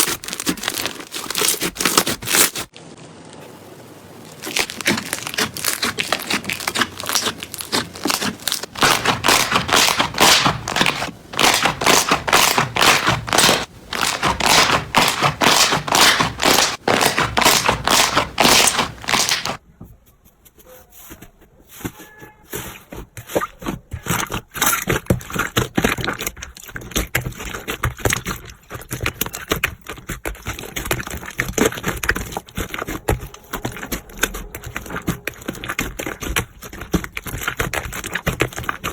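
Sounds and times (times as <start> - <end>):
slime crackling and popping: 0.0 - 3.4, 4.2 - 19.6.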